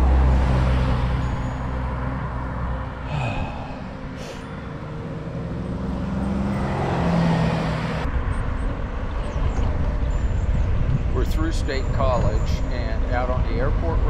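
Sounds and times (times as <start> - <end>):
motor vehicle engine: 0.0 - 14.0
traffic noise: 0.0 - 14.0
wind rushing over microphone: 6.3 - 14.0.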